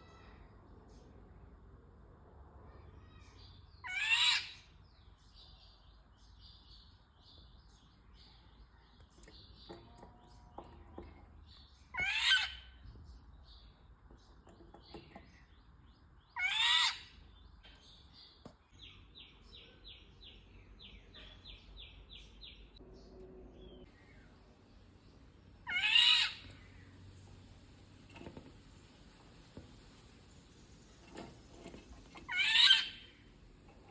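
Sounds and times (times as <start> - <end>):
harsh rasping bird calls: 3.1 - 4.8, 9.2 - 13.0, 16.2 - 18.3, 25.6 - 27.0, 30.8 - 33.9.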